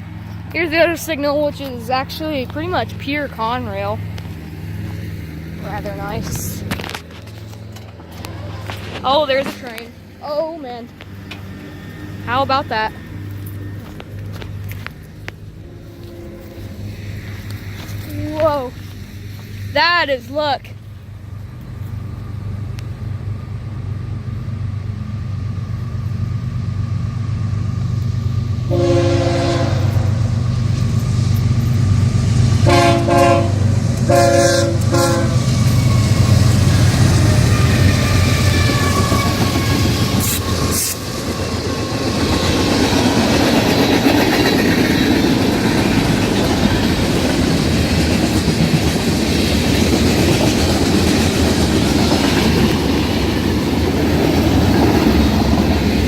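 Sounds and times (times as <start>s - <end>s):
diesel locomotive engine drone: 0.0s - 56.0s
train wheels on rails: 0.0s - 56.0s
train air horn blasts: 15.6s - 17.9s, 28.7s - 30.2s, 32.6s - 36.5s.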